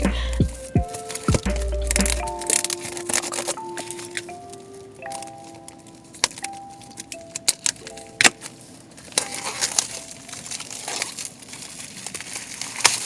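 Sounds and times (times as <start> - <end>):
soft background music: 0.0 - 11.3
packaging rustling: 0.0 - 13.0
packaging clicks and taps: 0.4 - 10.1.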